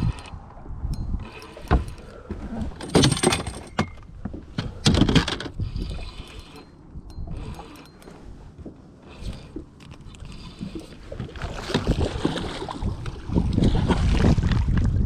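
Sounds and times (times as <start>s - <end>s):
water splashing: 9.1s - 14.8s.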